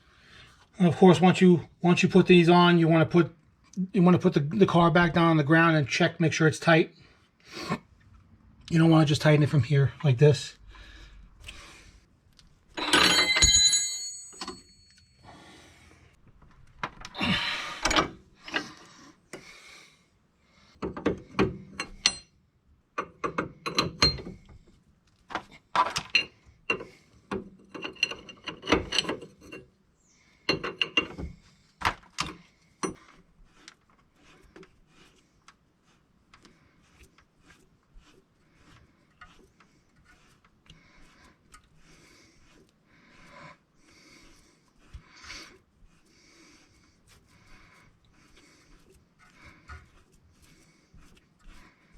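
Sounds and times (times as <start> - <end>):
metal tool clink: 12.8 - 15.2.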